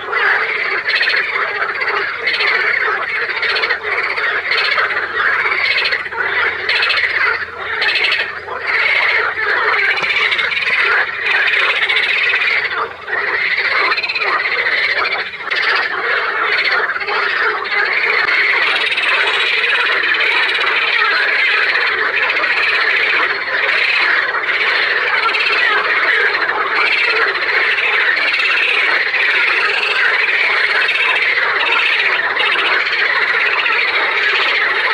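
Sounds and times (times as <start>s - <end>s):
frogs croaking: 0.0s - 34.9s.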